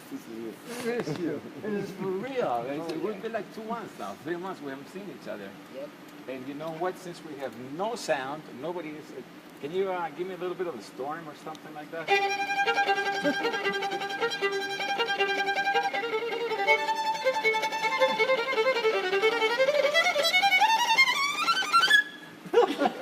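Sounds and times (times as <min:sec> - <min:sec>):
solo violin improvising: 0:12.0 - 0:22.4.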